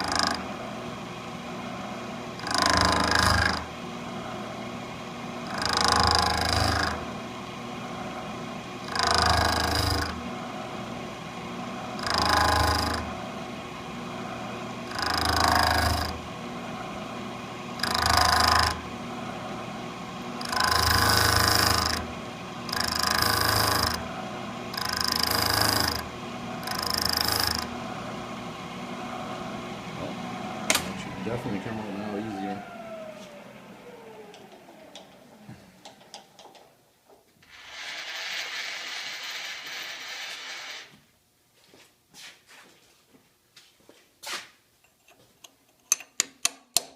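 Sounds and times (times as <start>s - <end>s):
harsh metal cutting bursts: 0.0s - 0.5s, 2.3s - 3.8s, 5.4s - 7.1s, 8.8s - 10.3s, 12.0s - 13.1s, 14.8s - 16.2s, 17.8s - 18.9s, 20.4s - 28.1s
milling machine running: 0.0s - 36.5s.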